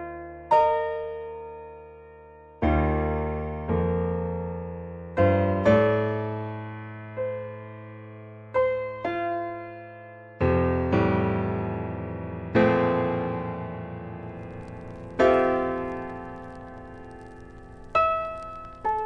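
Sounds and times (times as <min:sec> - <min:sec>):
slow piano chords: 0:00.0 - 0:19.0.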